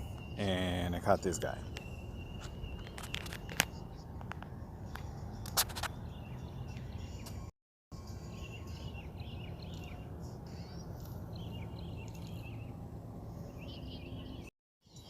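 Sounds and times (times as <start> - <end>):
faint bird chirps: 8.1 - 12.7.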